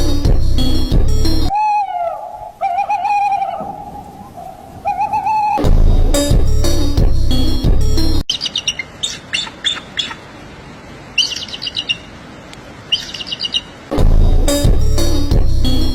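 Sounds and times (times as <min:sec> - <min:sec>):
music: 0:00.0 - 0:01.5, 0:05.6 - 0:08.2, 0:13.9 - 0:15.9
songbird chirping: 0:00.0 - 0:15.9.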